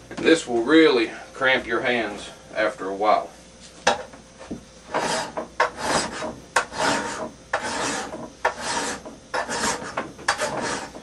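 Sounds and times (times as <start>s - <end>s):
hand file rasping on steel: 4.9s - 11.0s.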